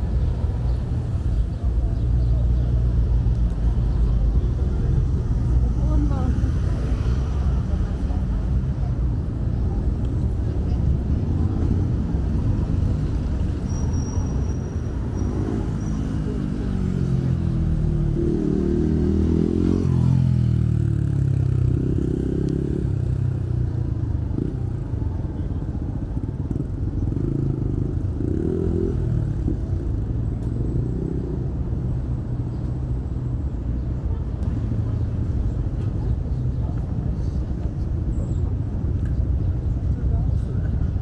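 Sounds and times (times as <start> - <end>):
street rumble: 0.0 - 41.0.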